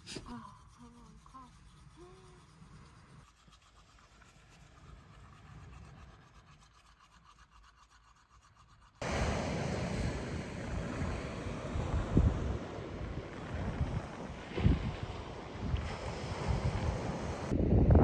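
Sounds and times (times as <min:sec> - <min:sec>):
fast rhythmic scratching: 0:00.0 - 0:09.0
wind buffeting microphone: 0:09.0 - 0:18.0.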